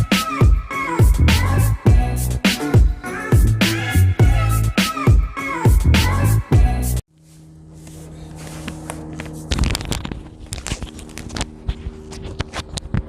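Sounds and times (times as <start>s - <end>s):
low hum: 7.1s - 13.0s.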